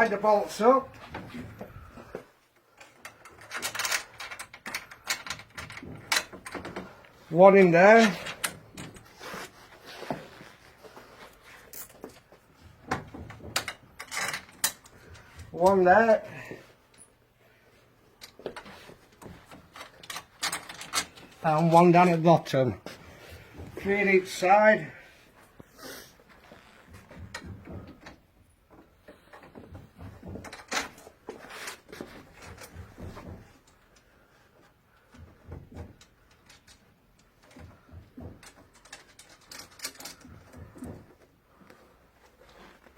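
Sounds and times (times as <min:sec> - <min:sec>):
metal parts clicking and knocking: 0:02.7 - 0:07.2, 0:11.5 - 0:15.9, 0:18.1 - 0:21.7, 0:26.6 - 0:34.1, 0:35.0 - 0:41.3.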